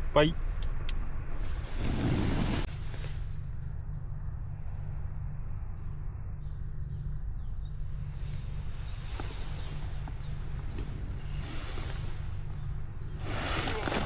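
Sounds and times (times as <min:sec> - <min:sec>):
steady low rumble: 0:00.0 - 0:14.0
loud rustle: 0:01.4 - 0:03.4, 0:08.2 - 0:14.0.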